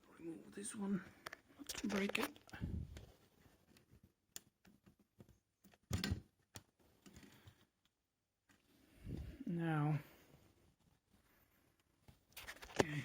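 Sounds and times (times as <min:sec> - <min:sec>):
plastic parts clicking and tapping: 0:03.7 - 0:08.0.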